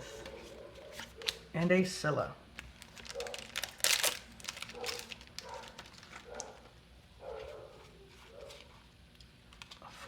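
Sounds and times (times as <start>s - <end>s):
foil wrapper crinkling and tearing: 2.6s - 6.6s
rustling of wrapper and cards: 2.6s - 6.7s.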